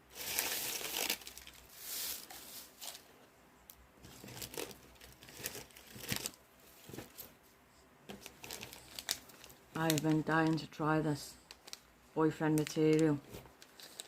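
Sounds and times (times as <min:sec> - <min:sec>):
packaging crinkling and tearing: 0:00.1 - 0:03.1, 0:04.1 - 0:06.4, 0:08.2 - 0:10.7, 0:11.4 - 0:11.9, 0:12.5 - 0:14.0.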